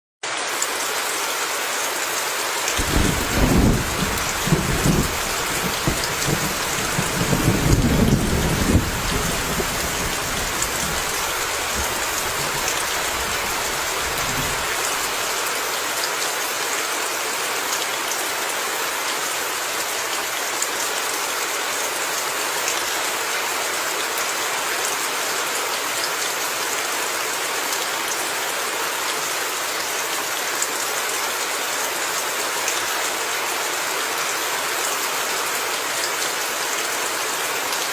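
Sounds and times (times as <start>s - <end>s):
steady rain falling: 0.2s - 37.9s
low thunder rumble: 2.8s - 15.3s.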